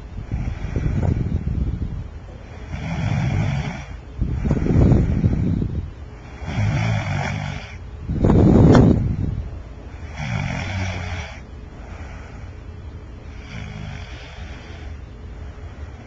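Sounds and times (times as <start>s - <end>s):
person snoring: 2.5s - 5.5s, 6.2s - 7.8s, 9.9s - 12.5s, 13.3s - 15.0s.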